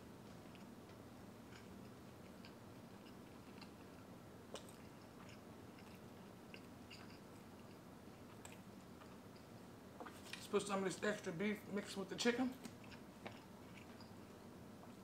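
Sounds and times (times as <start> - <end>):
chewing food: 0.2 - 10.5, 12.6 - 15.0.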